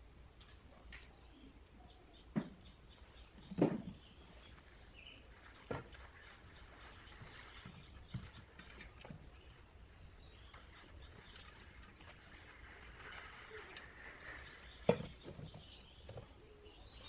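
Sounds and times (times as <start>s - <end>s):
knocks: 2.3s - 2.7s, 3.4s - 4.0s.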